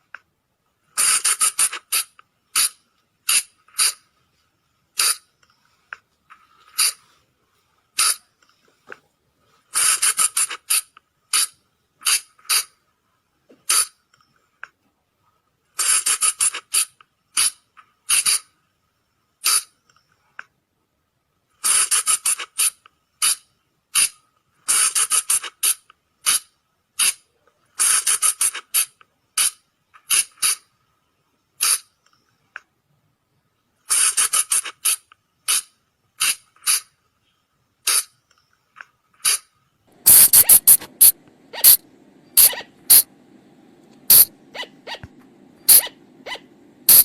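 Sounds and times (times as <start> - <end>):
high-pitched animal squeaks: 40.1 - 41.8, 42.4 - 43.1, 44.1 - 47.0.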